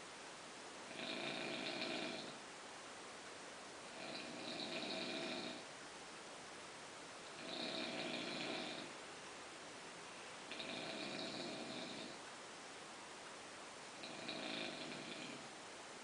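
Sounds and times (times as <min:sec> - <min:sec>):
person snoring through the nose: 0:00.9 - 0:02.4, 0:03.8 - 0:05.6, 0:07.3 - 0:08.9, 0:10.5 - 0:12.2, 0:14.0 - 0:15.4.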